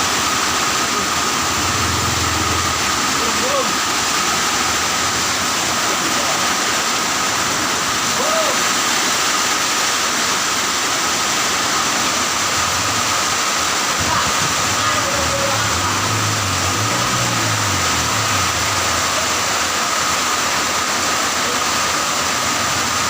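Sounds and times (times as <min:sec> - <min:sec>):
low engine-like hum: 0:00.0 - 0:06.6, 0:12.4 - 0:21.8
heavy rain: 0:00.0 - 0:23.0.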